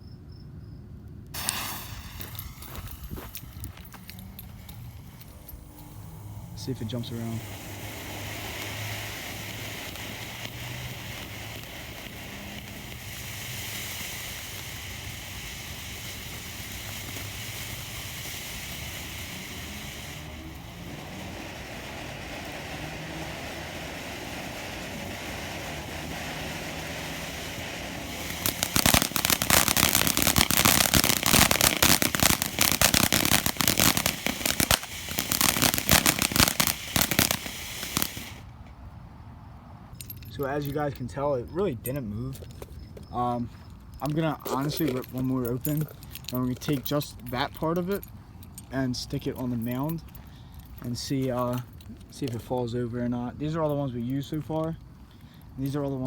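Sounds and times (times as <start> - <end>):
firework crackling: 1.3 - 38.6, 50.8 - 52.5
fountain firework hissing: 1.4 - 38.6.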